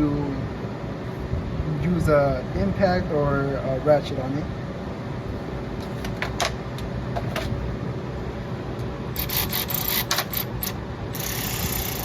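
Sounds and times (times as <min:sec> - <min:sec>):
steady low rumble: 0:00.0 - 0:09.2.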